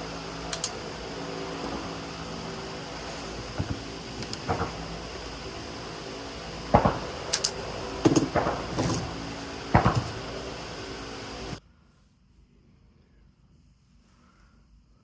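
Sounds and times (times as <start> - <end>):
steady low hum: 0.0 - 11.6
sharp clicks: 0.3 - 10.4.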